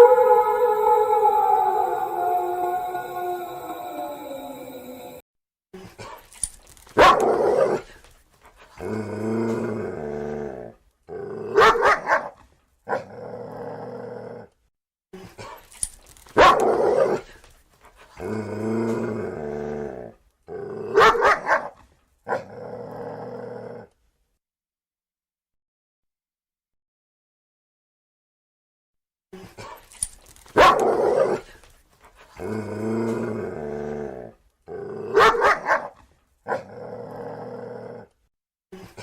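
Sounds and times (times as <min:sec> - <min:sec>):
animal barking: 0:00.0 - 0:05.2, 0:35.1 - 0:35.9
low pitched growl: 0:00.0 - 0:05.2.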